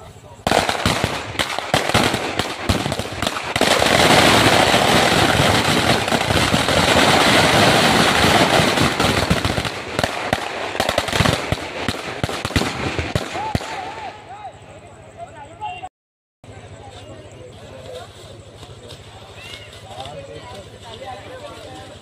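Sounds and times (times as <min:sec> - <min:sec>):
firecrackers going off: 0:00.0 - 0:14.7.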